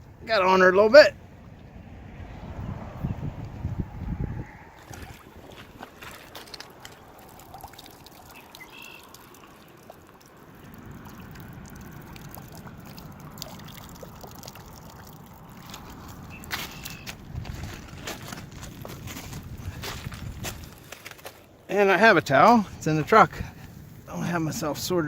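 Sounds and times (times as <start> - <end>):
water trickling: 3.4 - 20.9.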